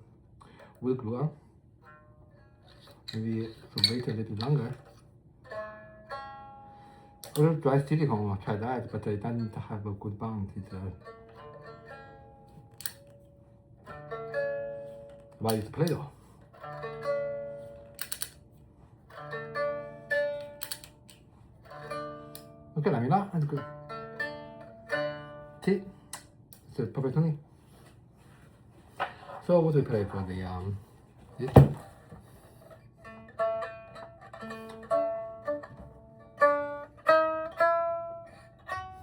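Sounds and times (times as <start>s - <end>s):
lute strings plucked: 1.8s - 18.4s, 19.1s - 27.4s, 33.0s - 39.0s
sharp clicks: 18.0s - 18.4s.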